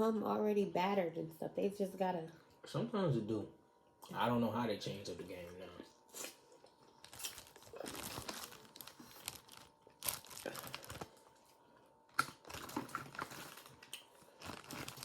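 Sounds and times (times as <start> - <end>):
crab shells cracking: 7.0 - 11.2, 12.1 - 15.0.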